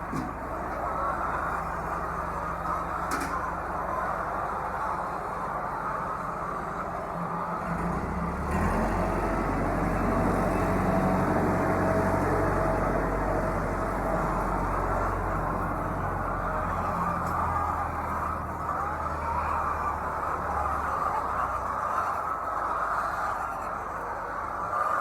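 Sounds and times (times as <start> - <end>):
low mechanical hum: 6.4 - 21.7.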